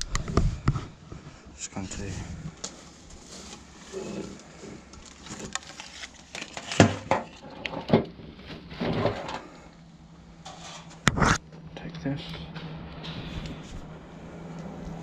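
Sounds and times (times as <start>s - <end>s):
electric fan parts knocking and clattering: 6.3s - 9.5s.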